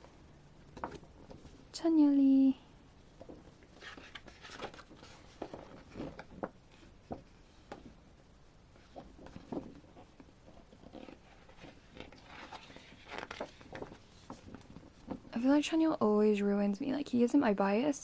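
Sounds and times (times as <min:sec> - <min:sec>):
paper rustling: 0:03.6 - 0:07.9, 0:08.8 - 0:15.3.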